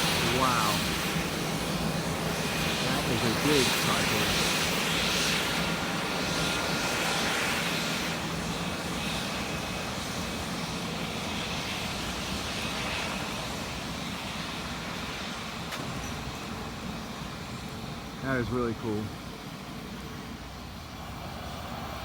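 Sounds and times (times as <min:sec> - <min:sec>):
jet engine rushing noise: 0:00.0 - 0:10.0
faint high jet whine: 0:00.0 - 0:22.0.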